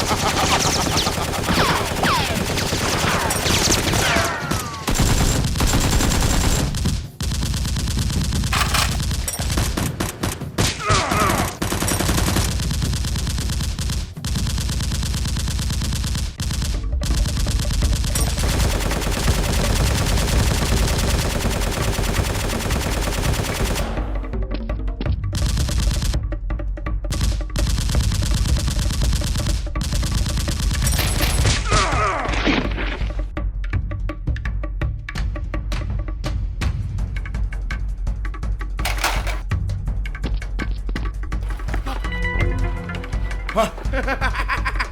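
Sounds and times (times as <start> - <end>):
automatic gunfire: 0.0 - 24.1, 38.8 - 39.4.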